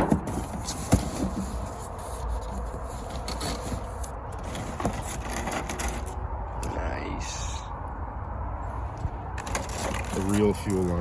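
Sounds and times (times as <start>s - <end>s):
scraping and rubbing: 0.0s - 6.2s, 9.3s - 11.0s
steady low rumble: 0.0s - 11.0s.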